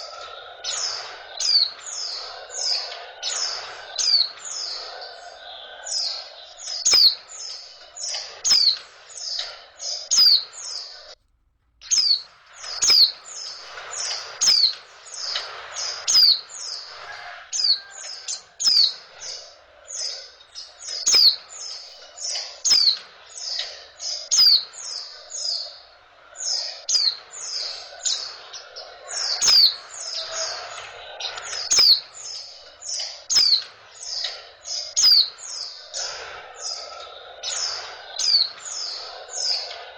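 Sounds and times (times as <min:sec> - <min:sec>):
bird chirping high and rapid: 0:00.0 - 0:11.2, 0:11.8 - 0:39.9.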